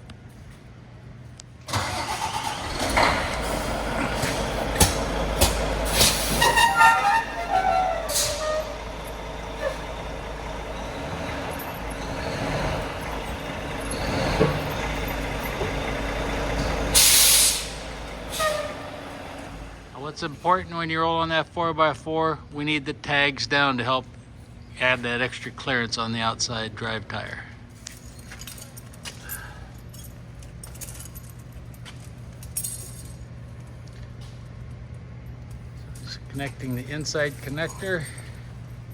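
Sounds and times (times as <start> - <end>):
truck engine running: 1.2 - 20.9, 27.7 - 38.9
air brakes hissing: 1.8 - 20.0
steady low hum: 2.6 - 38.9
chain links clinking: 7.0 - 15.7, 27.8 - 34.0, 35.6 - 38.9.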